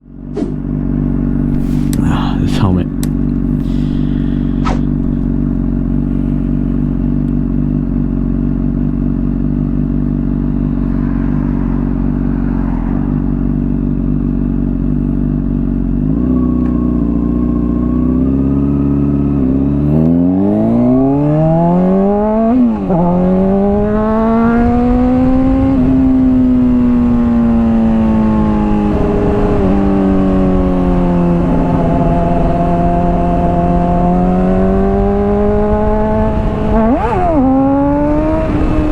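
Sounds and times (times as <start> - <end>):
motorcycle engine revving: 0.0 - 38.9.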